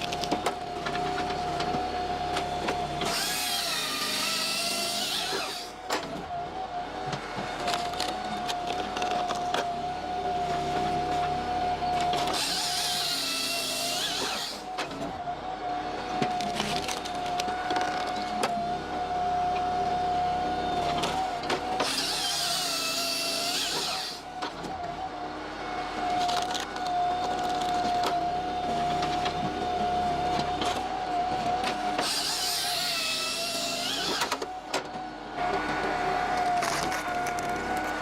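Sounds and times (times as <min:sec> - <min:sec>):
firewood processor running: 0:00.0 - 0:38.0
hissing hydraulic whine: 0:01.9 - 0:05.8, 0:11.8 - 0:14.7.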